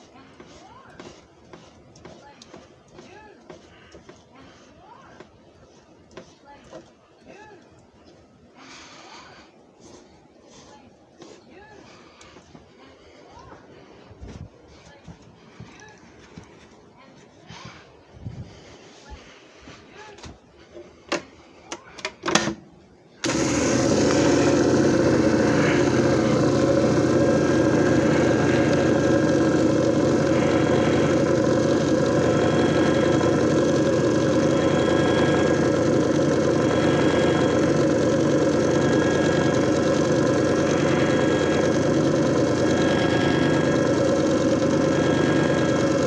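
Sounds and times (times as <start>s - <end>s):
clicks: 23.2s - 46.0s
machine motor humming: 23.2s - 46.0s.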